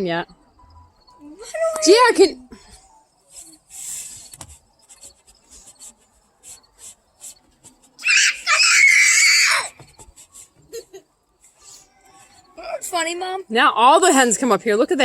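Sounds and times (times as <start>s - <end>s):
faint ticks and rustles: 0.6s - 8.0s
shrill high-pitched cry: 8.0s - 9.8s.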